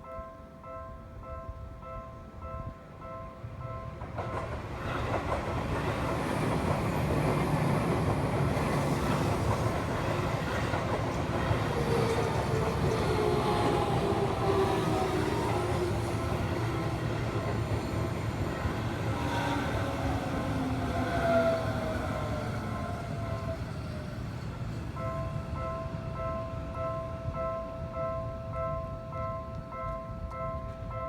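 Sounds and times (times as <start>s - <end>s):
level crossing warning bell: 0.0s - 24.2s, 24.8s - 31.0s
train wheels clattering on rails: 3.9s - 25.6s.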